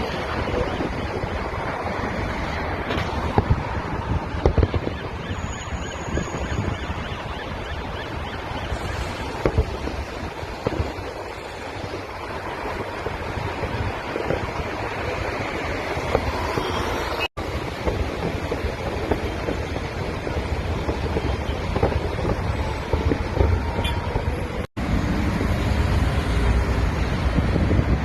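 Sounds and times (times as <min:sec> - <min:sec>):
road traffic: 0:00.0 - 0:28.0
wind on microphone: 0:00.0 - 0:28.0
distant fireworks bangs: 0:02.8 - 0:05.3, 0:08.7 - 0:24.7.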